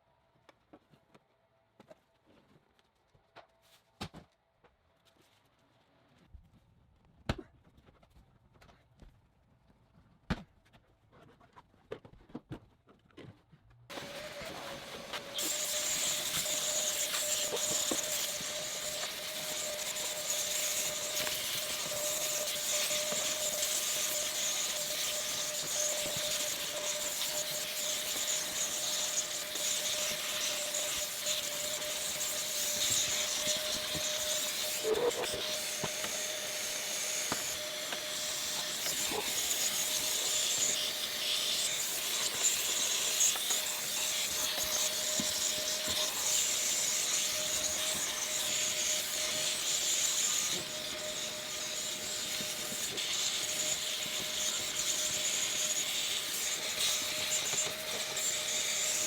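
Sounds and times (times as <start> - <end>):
vacuum cleaner running: 13.9 - 59.0.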